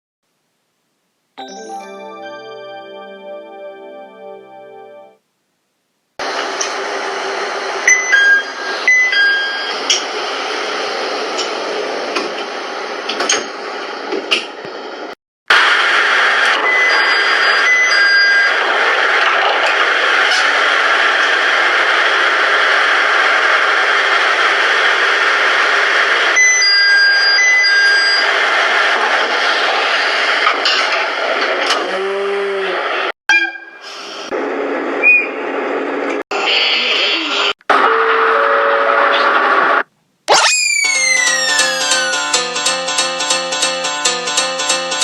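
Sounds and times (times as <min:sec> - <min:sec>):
two-tone electronic door chime: 0:01.4 - 0:05.2
train interior noise: 0:06.2 - 0:15.1.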